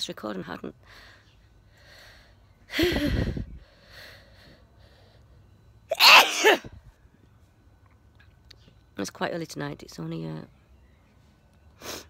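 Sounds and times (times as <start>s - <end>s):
faint breaths: 0.8s - 5.8s
woman sneezing: 5.9s - 6.7s.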